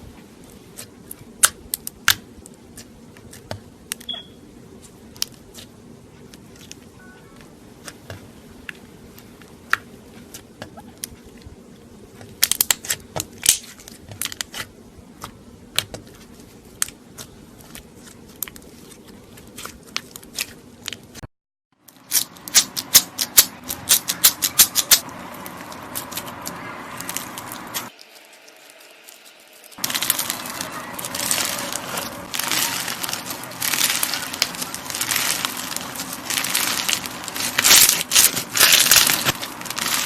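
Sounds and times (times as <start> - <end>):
slime popping and crackling: 0.8 - 4.2, 12.2 - 21.2, 21.8 - 40.0.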